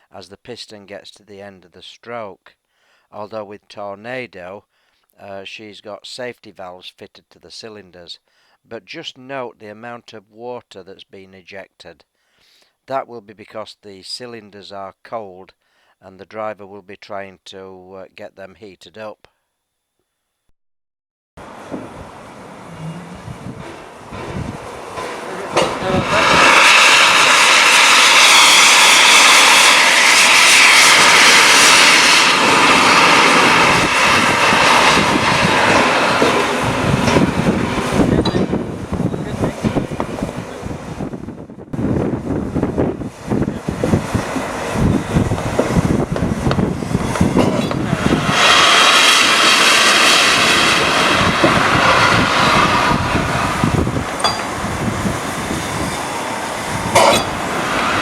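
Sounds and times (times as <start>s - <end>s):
steam locomotive hissing steam: 21.4s - 41.0s, 42.0s - 58.0s.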